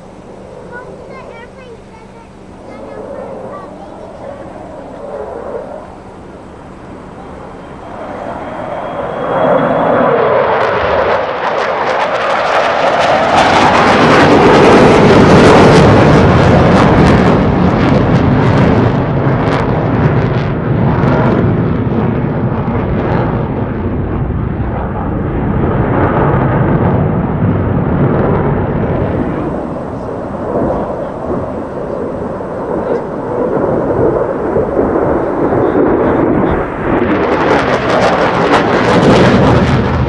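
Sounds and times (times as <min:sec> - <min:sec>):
falling jet whine: 0:00.0 - 0:40.0
fighter jet engine roar: 0:00.0 - 0:40.0.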